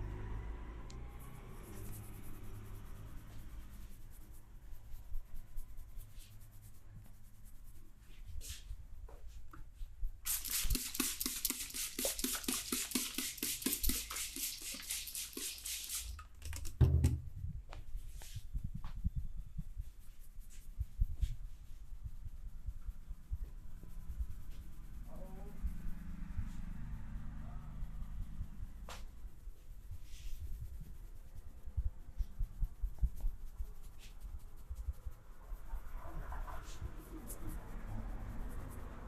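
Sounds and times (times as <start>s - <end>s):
hands rubbing head: 1.2s - 16.7s, 17.7s - 25.9s, 28.5s - 39.0s
heavy thump: 16.8s - 17.5s.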